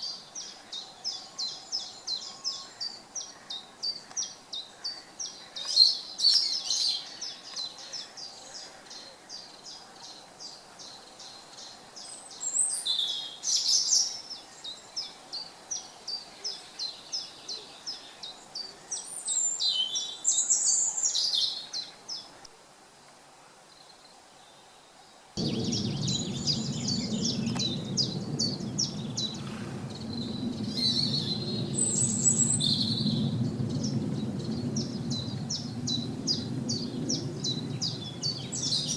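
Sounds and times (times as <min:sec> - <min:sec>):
bird high chirp: 0:25.4 - 0:38.9
birds singing phrases: 0:25.4 - 0:38.9
running water rushing: 0:25.4 - 0:38.9.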